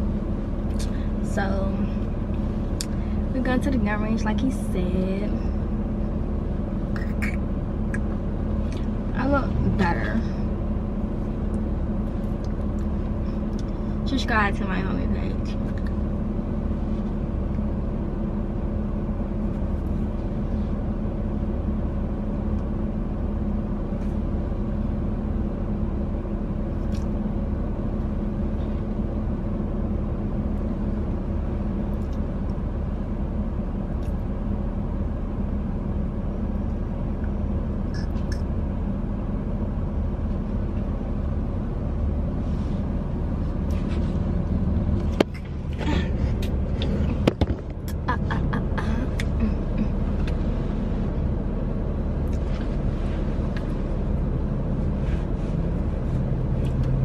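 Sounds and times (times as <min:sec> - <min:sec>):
car engine hum: 0:00.0 - 0:57.0
road rumble: 0:00.0 - 0:57.0.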